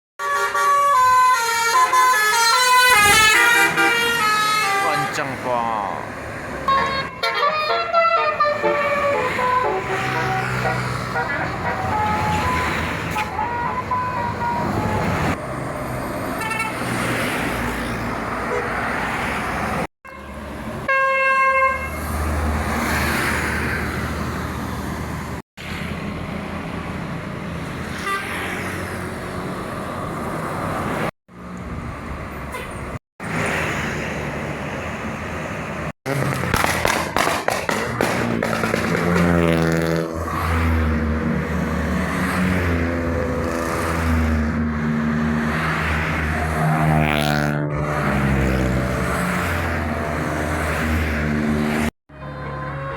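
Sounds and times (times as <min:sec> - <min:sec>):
bus multi-tone horn: 0:00.2 - 0:05.4, 0:06.7 - 0:15.4, 0:16.3 - 0:16.9, 0:20.1 - 0:22.1, 0:27.9 - 0:28.6, 0:46.4 - 0:50.2, 0:52.1 - 0:52.9
bus engine: 0:00.2 - 0:52.9
traffic noise: 0:00.2 - 0:52.9.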